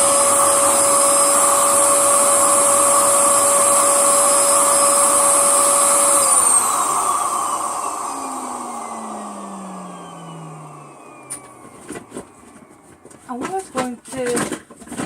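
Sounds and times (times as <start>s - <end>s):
vacuum cleaner motor whine: 0.0s - 14.5s.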